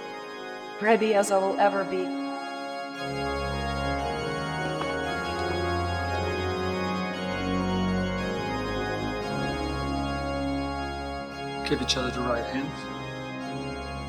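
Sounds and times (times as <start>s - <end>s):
organ playing slow chords: 0.0s - 14.0s.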